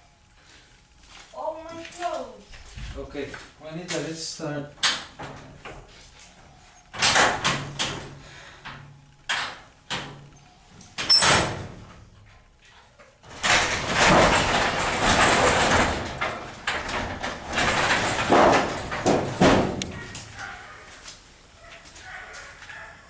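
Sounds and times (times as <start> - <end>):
continuous scraping: 12.2 - 22.9
belongings knocking and banging: 13.3 - 20.2.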